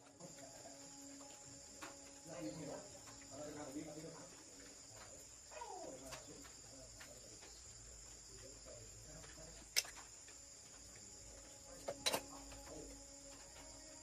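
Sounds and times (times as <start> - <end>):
insects chirring: 0.0 - 14.0
sharp clicks: 9.6 - 10.1.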